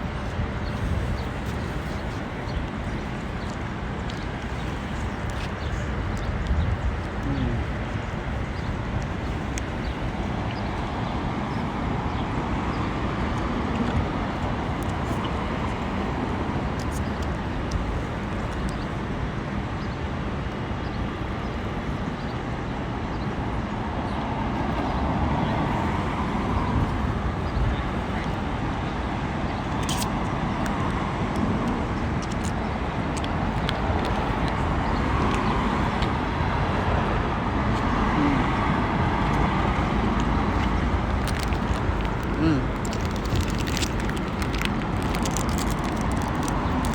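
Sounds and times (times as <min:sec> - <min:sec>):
cars passing: 0:22.8 - 0:46.9.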